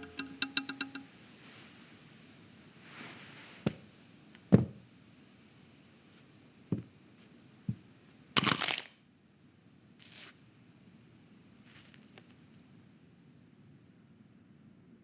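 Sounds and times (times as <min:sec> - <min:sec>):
short knocks or thumps: 0:00.0 - 0:01.1.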